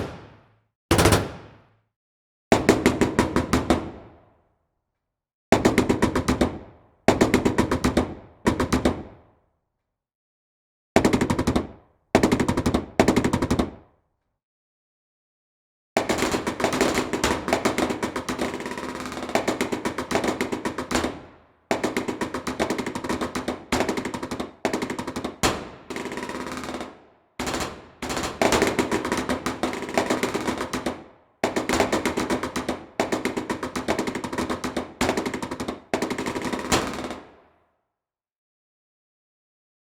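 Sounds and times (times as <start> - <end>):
machine gun automatic fire: 0.0 - 1.6.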